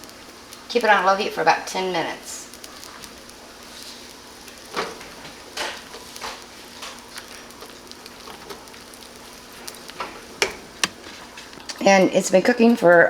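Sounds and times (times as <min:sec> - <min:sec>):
pot simmering with soft sizzle: 0:00.0 - 0:13.0
light pops: 0:09.9 - 0:11.8.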